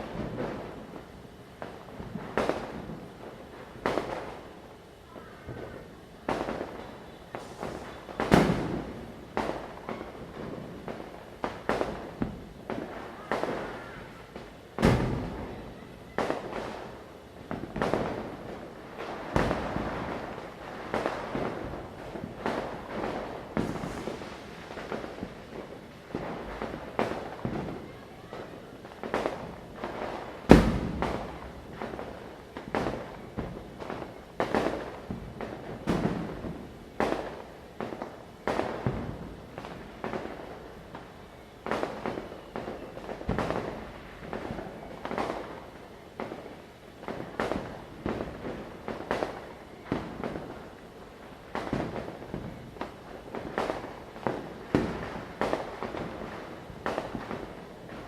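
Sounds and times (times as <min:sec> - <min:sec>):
firecrackers banging: 0:00.0 - 0:04.6, 0:05.2 - 0:58.0
heavy firecracker blast: 0:05.4 - 0:14.2, 0:14.8 - 0:15.6, 0:16.2 - 0:40.4.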